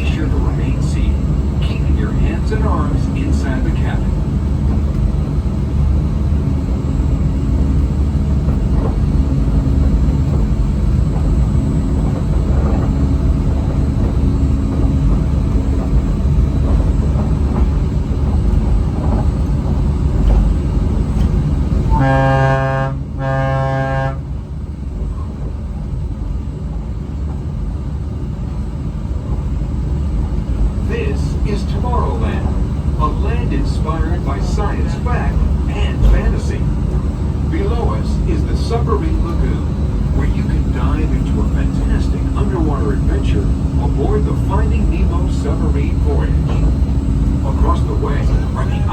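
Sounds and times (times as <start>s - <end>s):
monorail rumbling on its beam: 0.0s - 48.9s
monorail horn blasts: 21.9s - 24.4s.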